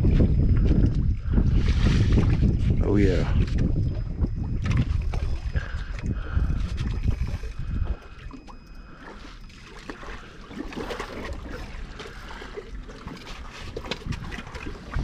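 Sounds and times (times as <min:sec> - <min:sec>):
water lapping against boat: 0:00.0 - 0:15.0.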